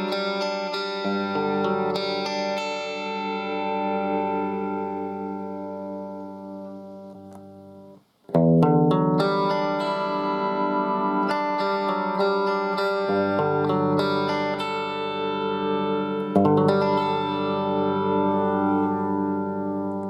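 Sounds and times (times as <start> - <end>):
electric guitar clean chords: 0.0 - 20.0.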